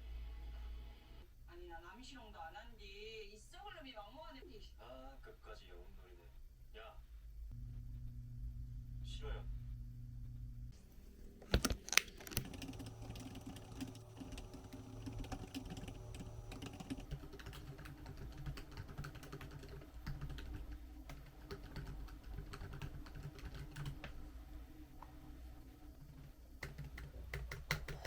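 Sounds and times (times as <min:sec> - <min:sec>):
computer keyboard typing: 0:11.5 - 0:24.2, 0:26.6 - 0:28.0.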